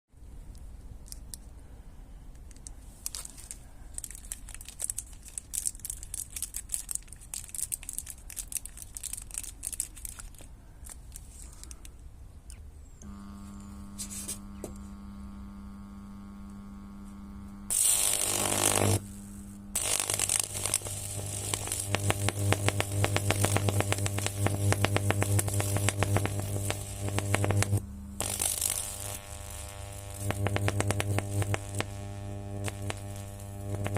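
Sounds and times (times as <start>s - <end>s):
microwave oven humming: 13.0s - 33.9s
sparking crackling inside microwave: 13.0s - 33.9s.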